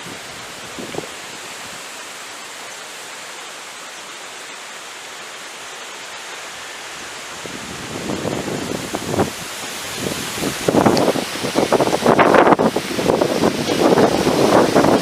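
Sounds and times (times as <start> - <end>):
heavy rain: 0.0 - 15.0.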